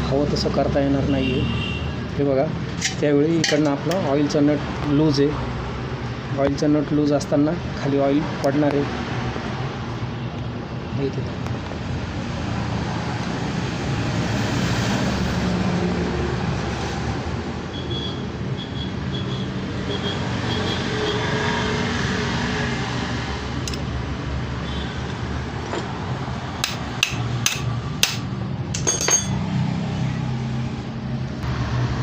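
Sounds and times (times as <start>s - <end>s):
road traffic noise: 0.0s - 32.0s
metallic tool taps and clicks: 26.6s - 29.4s.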